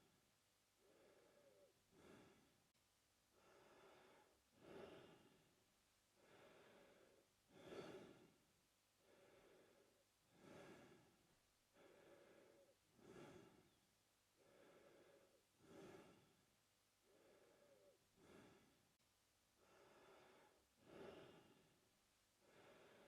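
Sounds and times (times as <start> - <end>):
man breathing through mouth: 0.8 - 2.5, 9.0 - 11.1, 11.8 - 13.8, 14.4 - 16.4, 17.0 - 18.8, 19.6 - 21.7.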